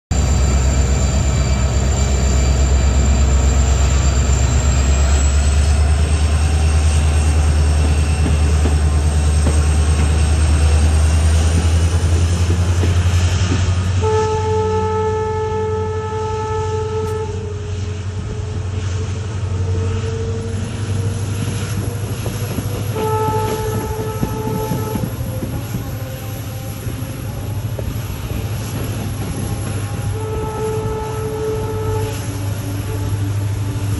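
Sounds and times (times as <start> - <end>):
diesel locomotive low hum: 0.0 - 33.9
locomotive horn blasts: 13.9 - 20.9, 21.7 - 33.9.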